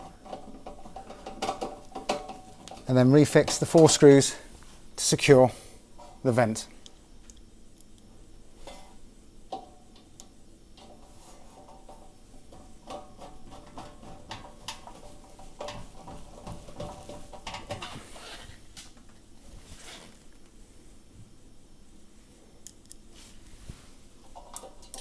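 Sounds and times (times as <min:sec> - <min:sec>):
light metal clinks and knocks: 0:00.0 - 0:04.4, 0:06.0 - 0:18.2, 0:24.2 - 0:25.0.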